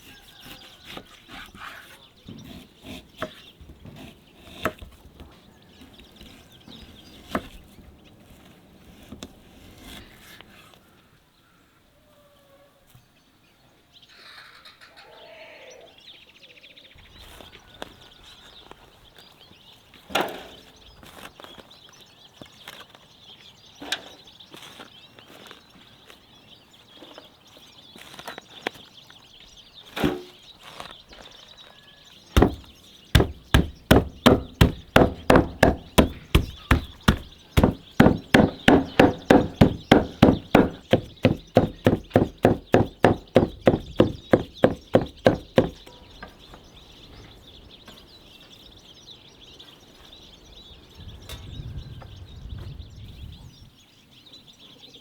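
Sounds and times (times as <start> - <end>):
knife chopping on wooden board: 32.4 - 45.8.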